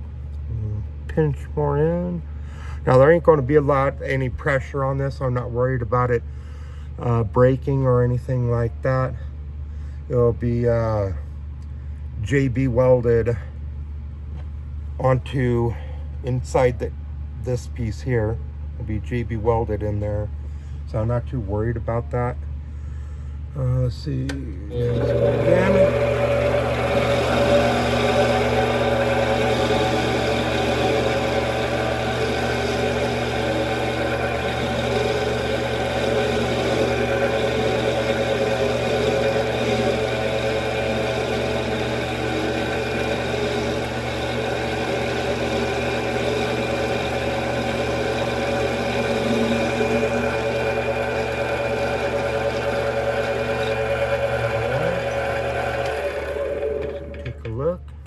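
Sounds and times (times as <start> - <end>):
metal lathe humming: 24.7 - 57.5.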